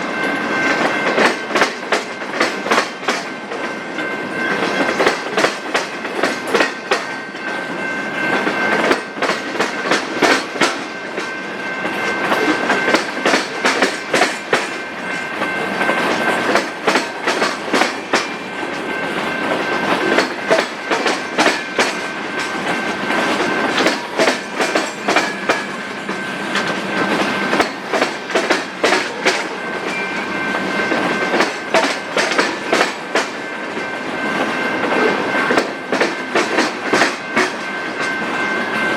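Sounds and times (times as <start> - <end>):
steady high-pitched tone: 0.0 - 38.9
train wheels clickety-clack: 0.0 - 38.9.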